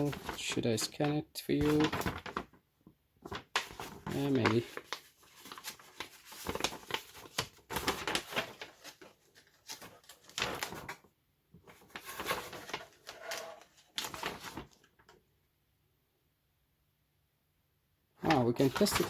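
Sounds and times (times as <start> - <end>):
paper rustling: 0.0 - 2.6, 3.2 - 15.2, 18.2 - 19.0.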